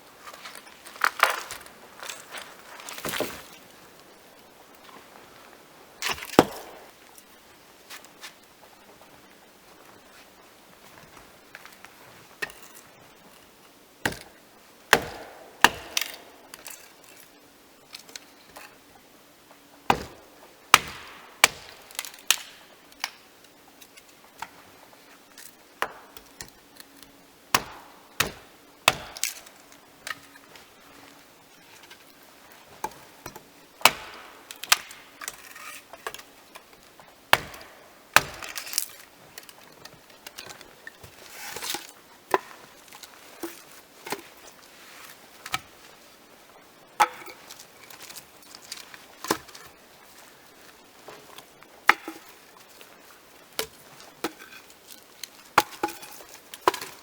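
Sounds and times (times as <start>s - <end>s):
axe chopping wood: 6.0s - 6.9s, 14.1s - 14.3s, 14.9s - 16.8s, 19.9s - 23.2s, 25.8s - 26.3s, 27.5s - 29.5s, 33.3s - 35.5s, 37.3s - 39.0s, 51.9s - 52.3s.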